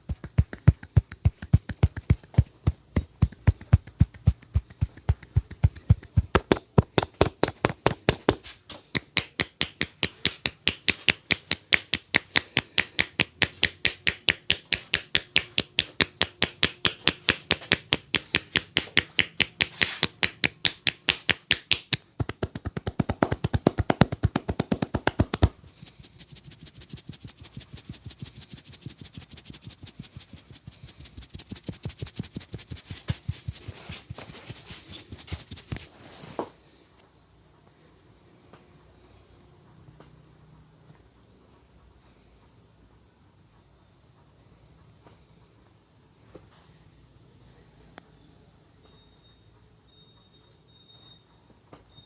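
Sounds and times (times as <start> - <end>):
hands drumming percussive massage: 0.0 - 35.9.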